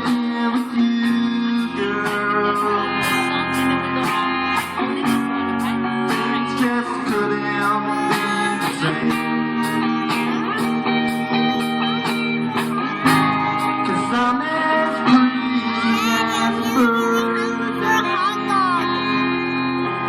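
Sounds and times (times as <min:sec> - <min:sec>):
steady drum beat: 0:00.0 - 0:13.8
guitar-led instrumental band music: 0:00.0 - 0:20.0.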